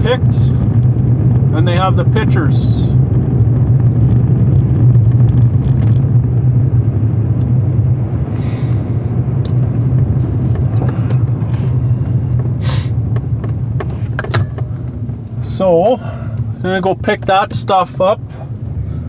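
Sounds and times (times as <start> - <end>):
engine and road rumble: 0.0 - 19.0.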